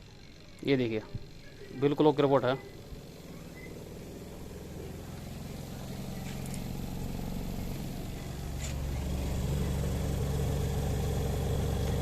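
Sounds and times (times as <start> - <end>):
spin dryer humming: 0.0 - 12.0.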